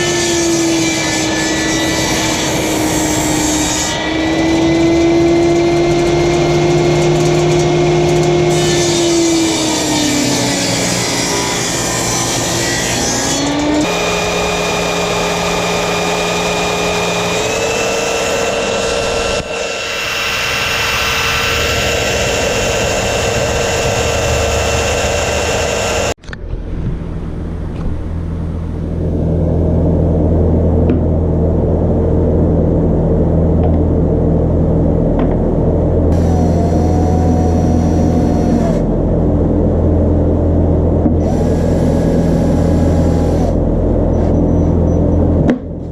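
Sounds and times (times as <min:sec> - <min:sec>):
deeper running hum: 0:00.0 - 0:45.9
machine motor hum: 0:13.8 - 0:40.0.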